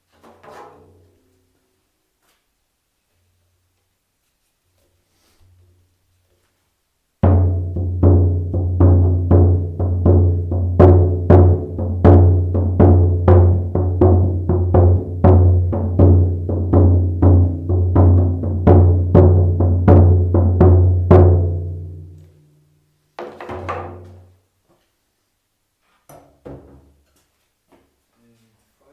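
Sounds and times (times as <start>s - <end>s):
shaman drum beating: 7.2s - 22.1s.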